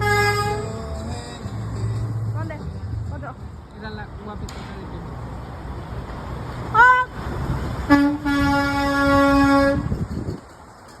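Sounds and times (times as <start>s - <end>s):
truck horn honking: 0.0s - 2.3s, 6.7s - 10.0s
passing traffic rumble: 0.0s - 11.0s.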